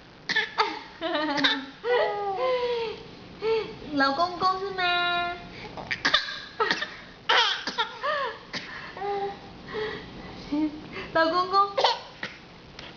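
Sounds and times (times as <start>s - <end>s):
child pretend coughing: 11.8s - 12.4s.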